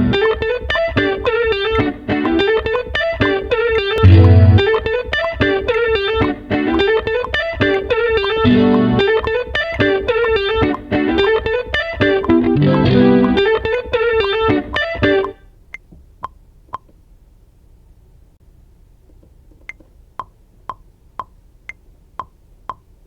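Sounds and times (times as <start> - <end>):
plucked guitar-like notes: 0.0 - 15.4
heavy bass hit: 4.0 - 4.7
held low note: 4.0 - 4.8.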